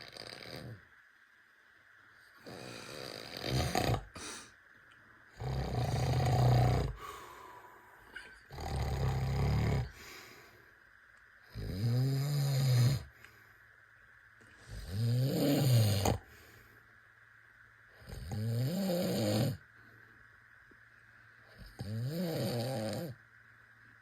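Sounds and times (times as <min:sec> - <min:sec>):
person snoring: 0:00.0 - 0:00.8, 0:02.4 - 0:04.6, 0:05.4 - 0:10.4, 0:11.5 - 0:13.2, 0:14.7 - 0:16.3, 0:18.0 - 0:19.6, 0:21.6 - 0:23.2
quiet breathing: 0:02.0 - 0:18.4, 0:19.0 - 0:24.0.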